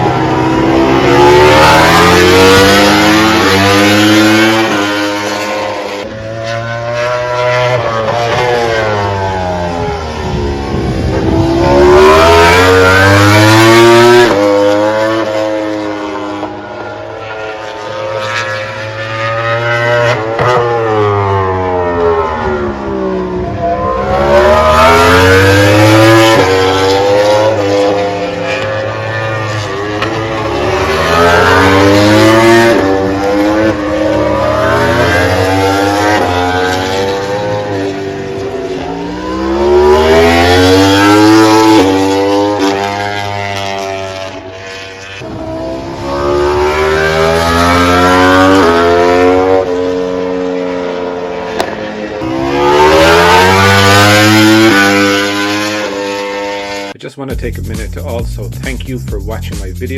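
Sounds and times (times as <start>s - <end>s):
racing motorcycles passing: 0.0s - 57.0s.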